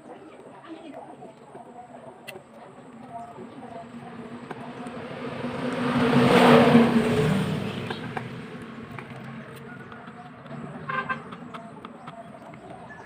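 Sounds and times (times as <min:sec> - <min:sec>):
vehicle passing by: 0:03.7 - 0:13.0.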